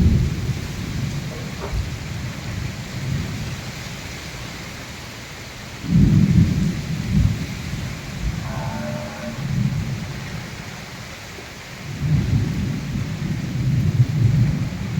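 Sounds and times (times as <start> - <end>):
heavy rain hissing: 0.0 - 14.9
low rumbling surges: 5.9 - 13.4.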